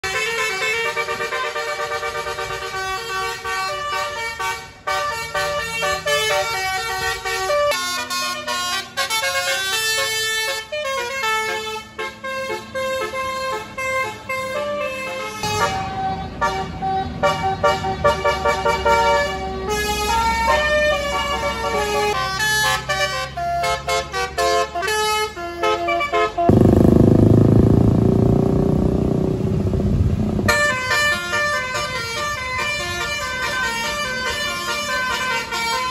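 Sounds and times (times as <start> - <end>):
multi-tone bus horn tunes: 0.0 - 26.6, 30.3 - 35.9
loud low rumble: 26.5 - 31.8.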